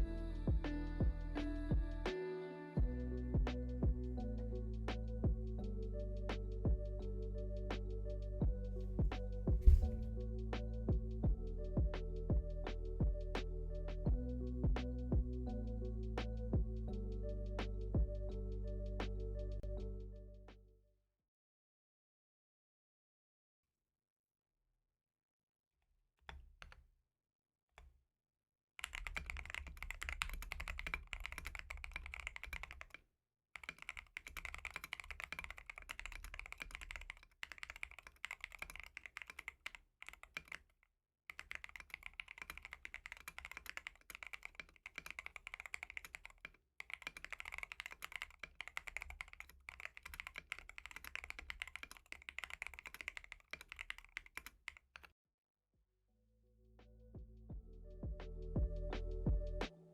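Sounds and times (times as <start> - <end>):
typing on a mechanical keyboard: 28.8 - 33.0, 33.6 - 40.7, 41.3 - 55.1.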